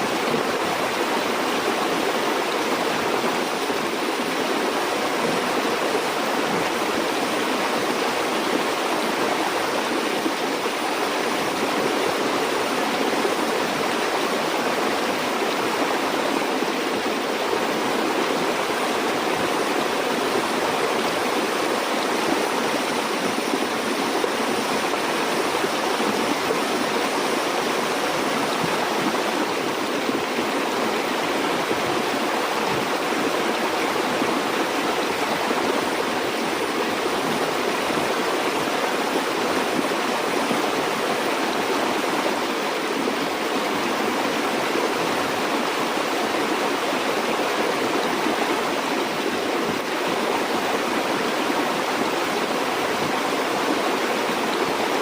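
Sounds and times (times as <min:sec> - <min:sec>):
stream flowing over rocks: 0:00.0 - 0:55.0.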